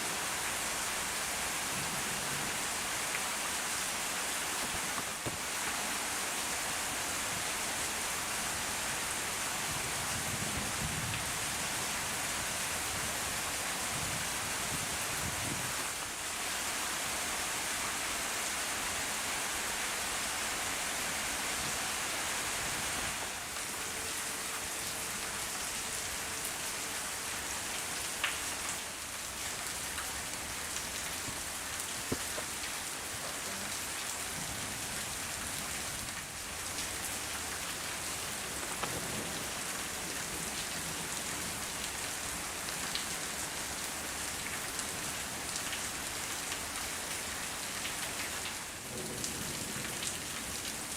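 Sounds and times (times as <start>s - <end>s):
steady rain hiss: 0.0s - 50.9s.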